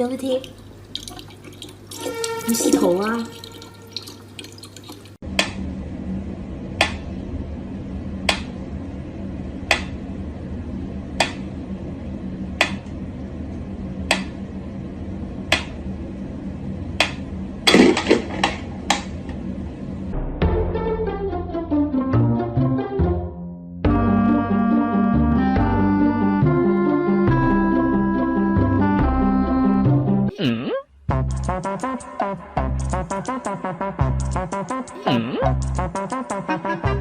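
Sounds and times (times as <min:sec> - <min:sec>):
low hum: 0:05.2 - 0:21.8.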